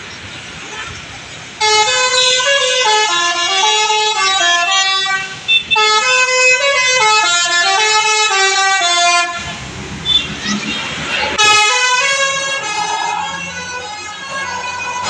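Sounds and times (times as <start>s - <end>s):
musical air horn tune: 11.4s - 15.0s.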